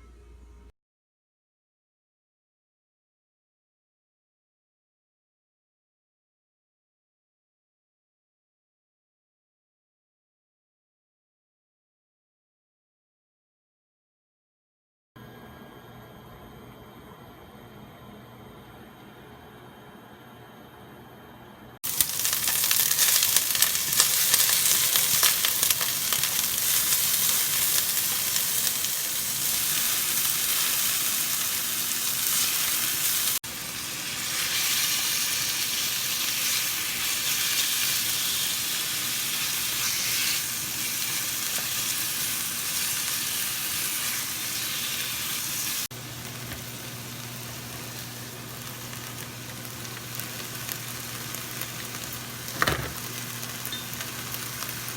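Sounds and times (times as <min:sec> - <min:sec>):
food sizzling in a pan: 0:21.8 - 0:54.9.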